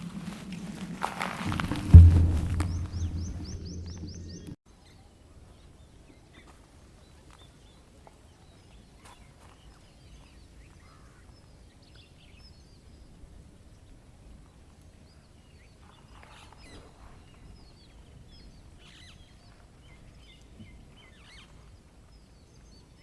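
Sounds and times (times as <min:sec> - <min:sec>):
birds chirping: 0:01.2 - 0:04.6
low hum: 0:01.5 - 0:04.6.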